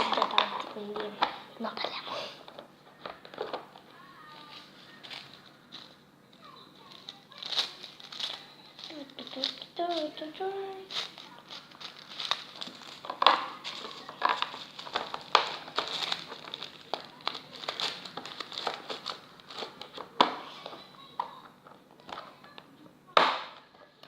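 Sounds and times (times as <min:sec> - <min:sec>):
slime crackling and popping: 0:10.9 - 0:19.2.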